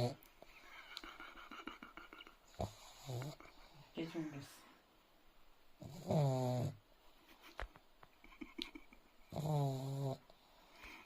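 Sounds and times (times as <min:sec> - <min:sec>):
dog snoring: 0:00.0 - 0:00.2, 0:02.6 - 0:03.4, 0:05.8 - 0:06.8, 0:09.3 - 0:10.3.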